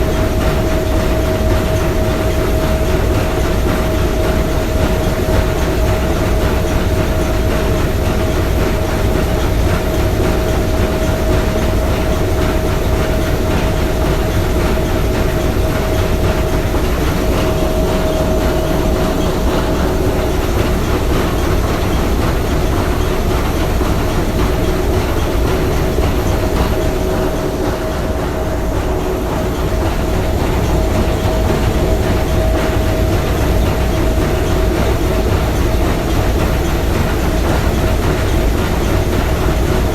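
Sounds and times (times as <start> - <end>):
steam engine clattering: 0.0 - 39.9.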